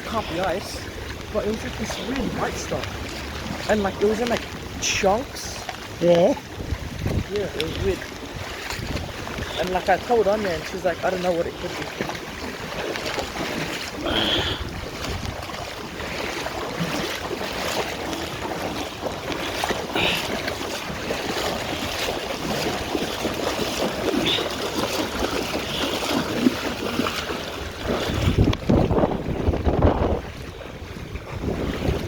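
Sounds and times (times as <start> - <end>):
floodwater rushing: 0.0 - 32.0
wind on microphone: 6.4 - 9.7, 12.3 - 16.2, 20.9 - 32.0.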